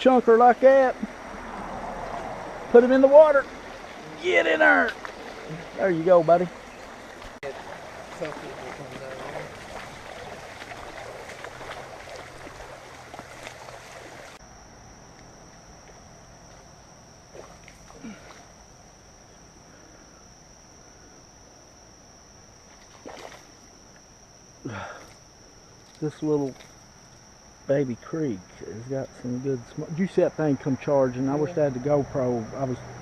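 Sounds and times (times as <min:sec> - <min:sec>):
creek water running and splashing: 0:00.0 - 0:14.4
insects droning: 0:00.0 - 0:33.0.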